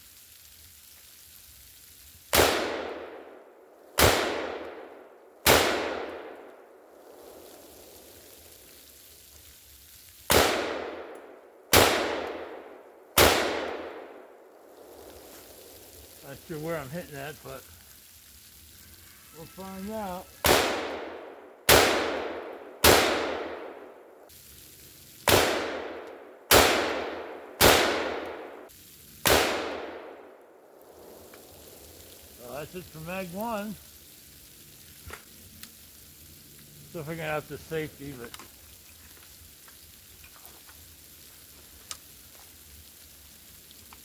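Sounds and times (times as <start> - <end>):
rifle shots with echo: 2.4 - 3.4, 4.0 - 6.5, 10.3 - 11.1, 11.7 - 14.2, 20.4 - 23.9, 25.3 - 28.6, 29.2 - 30.3.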